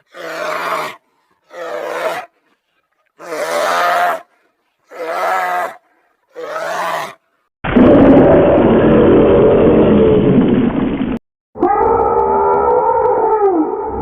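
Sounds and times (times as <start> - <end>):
long drawn-out creature call: 0.0 - 2.4, 3.2 - 4.3, 4.9 - 7.3.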